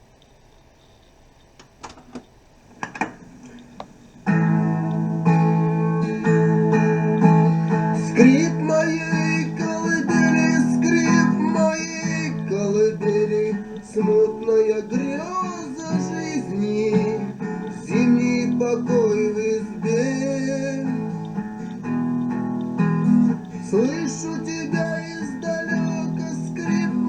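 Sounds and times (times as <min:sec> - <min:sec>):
tape clicks: 0:00.0 - 0:27.0
tape hiss: 0:00.0 - 0:27.0
acoustic guitar strumming chords: 0:03.0 - 0:27.0.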